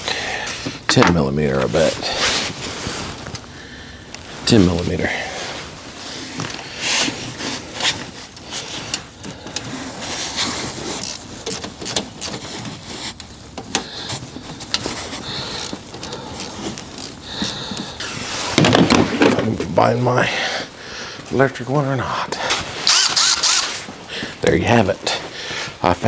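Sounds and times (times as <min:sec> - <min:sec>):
hand tools clicking and scraping: 0:06.1 - 0:19.6, 0:22.4 - 0:24.4.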